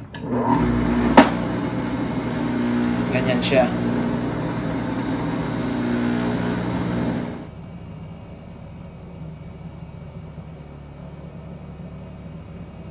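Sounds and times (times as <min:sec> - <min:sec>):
juicer motor humming: 0:00.0 - 0:07.5.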